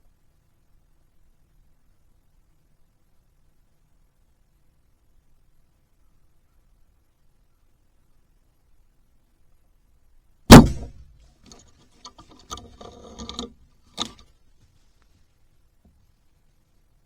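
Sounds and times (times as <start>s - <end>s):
bow shot sharp crack: 10.5s - 11.1s
sharp click: 10.5s - 11.1s.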